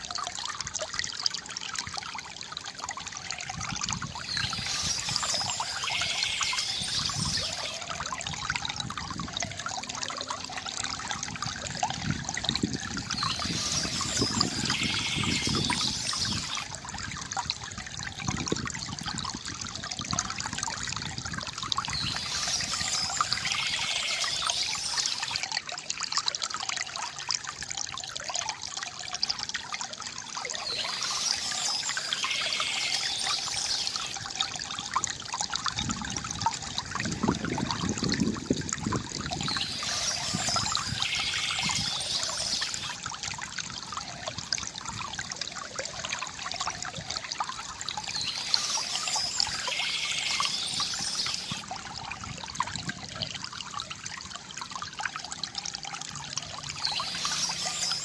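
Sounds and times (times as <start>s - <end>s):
water trickling from fountain spout: 0.0s - 58.0s
birds chirping: 4.1s - 7.8s, 13.0s - 16.6s, 21.9s - 25.4s, 30.5s - 34.2s, 39.4s - 43.0s, 48.0s - 51.6s, 56.8s - 58.0s.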